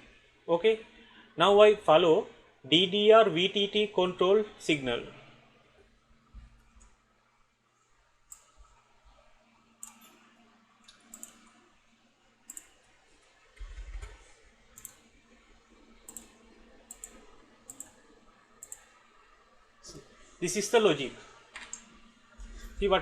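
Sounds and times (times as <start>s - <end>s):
computer mouse clicking: 8.3s - 8.6s, 9.8s - 10.2s, 10.8s - 11.5s, 12.5s - 12.8s, 14.8s - 15.1s, 16.0s - 18.0s, 18.6s - 18.9s.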